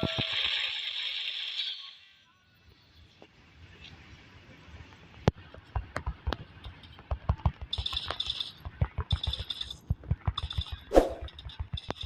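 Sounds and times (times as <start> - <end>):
irregular knocks and clicks: 5.3 - 12.0.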